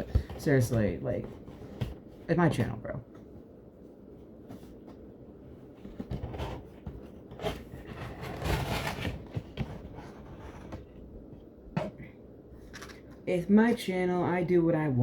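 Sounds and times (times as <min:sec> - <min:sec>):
packaging rustling and scraping: 0:04.3 - 0:11.1.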